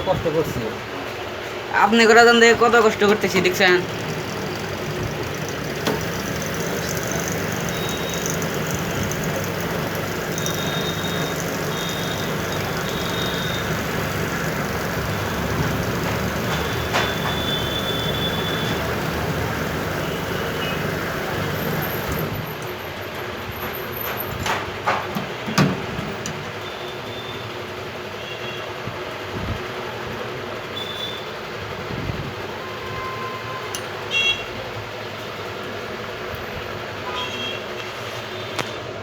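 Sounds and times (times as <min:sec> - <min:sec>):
mechanical rumble with hiss: 0:00.0 - 0:27.0.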